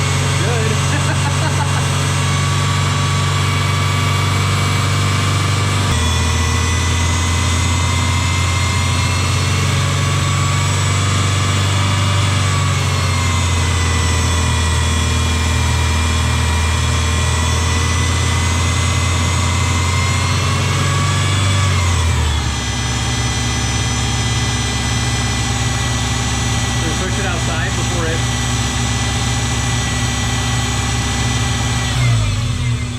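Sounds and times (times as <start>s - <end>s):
engine idling: 0.0s - 32.9s
power steering pump whine: 0.0s - 32.9s.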